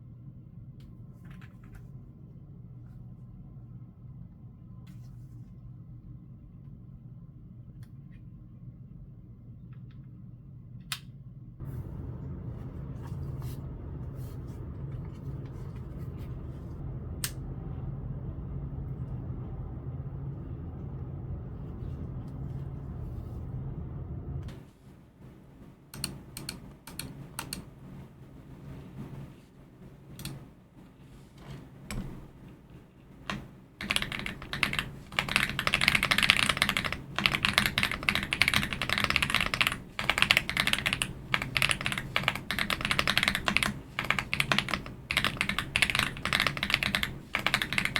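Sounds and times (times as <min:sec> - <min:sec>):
steady low hum: 0:00.0 - 0:47.9
keyboard typing: 0:25.9 - 0:27.7, 0:33.3 - 0:47.9.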